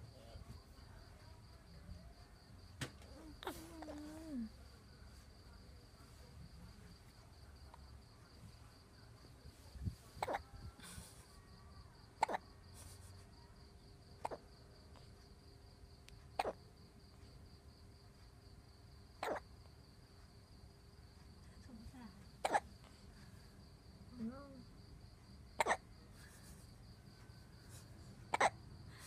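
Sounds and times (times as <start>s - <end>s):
baby hiccuping: 10.2s - 10.5s, 12.2s - 12.4s, 14.2s - 14.4s, 16.4s - 16.6s, 19.2s - 19.5s, 22.4s - 22.7s, 25.6s - 25.9s, 28.3s - 28.6s.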